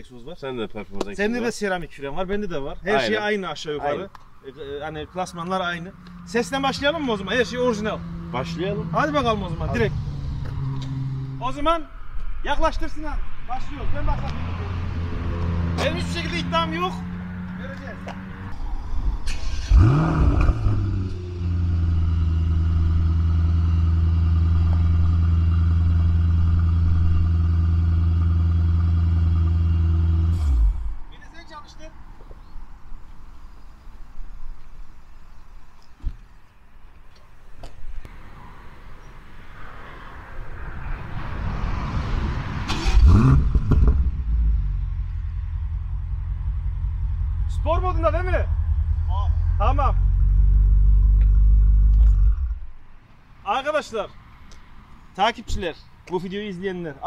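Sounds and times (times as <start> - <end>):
car engine starting and idling: 4.8 - 11.9, 14.0 - 31.2, 42.5 - 52.8.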